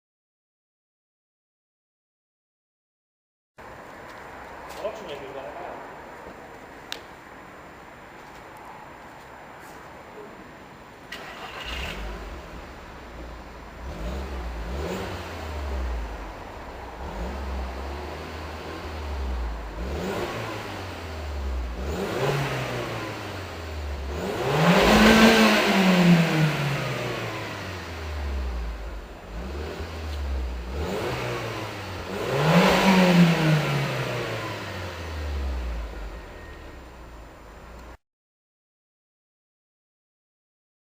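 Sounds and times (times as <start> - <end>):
car engine revving: 11.1 - 37.5.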